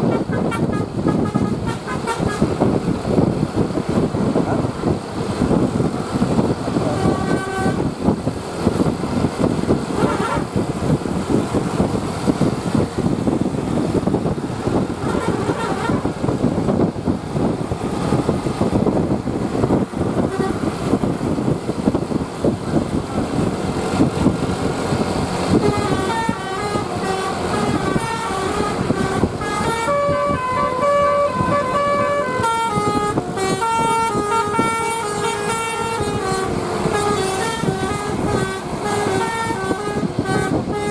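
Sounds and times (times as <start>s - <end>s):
musical air horn: 0.0s - 2.6s, 6.9s - 7.9s, 10.0s - 10.5s, 15.0s - 16.1s, 20.2s - 20.7s, 25.5s - 40.9s
bus and traffic noise: 0.0s - 40.9s.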